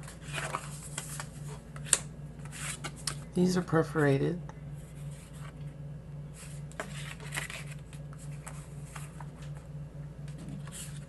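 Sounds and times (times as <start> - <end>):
paper cards rustling and sliding: 0.0 - 3.2, 4.8 - 5.7, 6.3 - 9.7, 10.4 - 11.0
steady low hum: 0.0 - 11.0.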